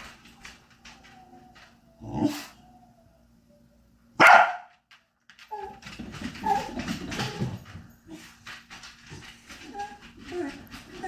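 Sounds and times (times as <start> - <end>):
dog whimpering and whining: 0.8 - 3.6.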